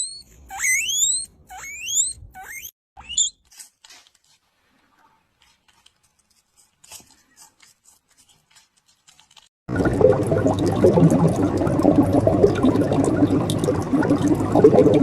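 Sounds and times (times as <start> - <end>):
small animal squeaking: 0.0 - 3.4
faint clicks and scratches: 3.4 - 9.5.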